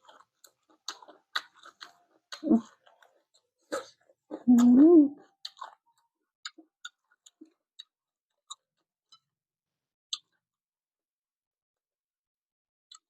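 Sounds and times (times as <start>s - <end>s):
chewing and lip-smacking: 0.0s - 9.3s, 10.1s - 10.4s.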